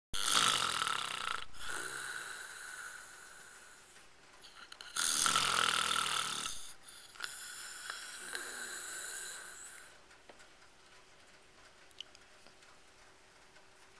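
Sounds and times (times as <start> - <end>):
man snoring: 0.2 - 10.0.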